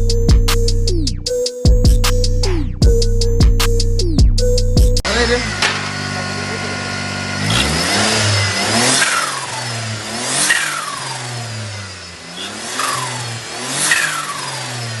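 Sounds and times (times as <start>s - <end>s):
car engine revving: 5.0s - 15.0s.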